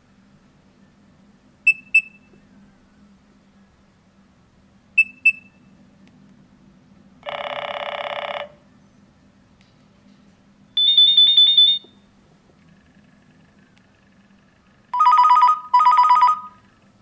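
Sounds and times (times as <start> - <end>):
mobile phone alert beeps: 1.7 - 2.3, 5.0 - 5.6, 10.8 - 12.0, 15.0 - 16.6
buzzy phone tone: 7.2 - 8.6, 14.9 - 16.7.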